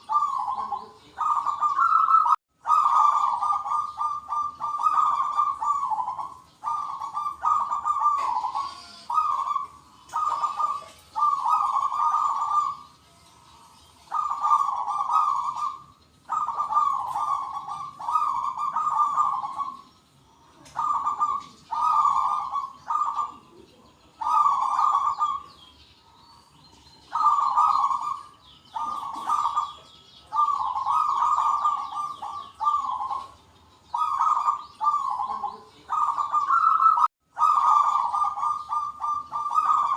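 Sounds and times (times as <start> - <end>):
doves cooing: 0.0 - 39.9
small birds chirping: 0.0 - 39.9.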